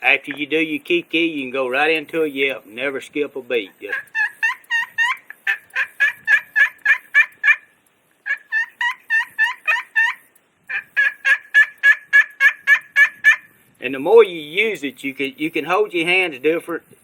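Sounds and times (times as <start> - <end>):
turkey call yelps: 3.8 - 13.6.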